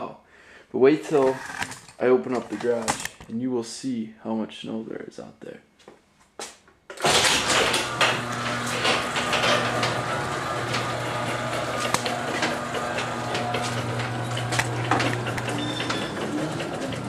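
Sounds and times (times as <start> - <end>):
garage door rattling: 1.1 - 3.2, 7.0 - 17.0
garage door motor hum: 7.0 - 17.0.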